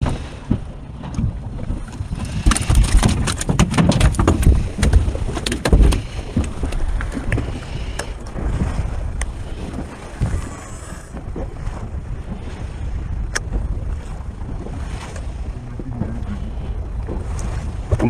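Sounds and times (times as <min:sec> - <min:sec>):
low rumbling: 0:00.0 - 0:18.0
wind buffeting microphone: 0:00.0 - 0:18.0
knocks and clatters: 0:02.2 - 0:07.4.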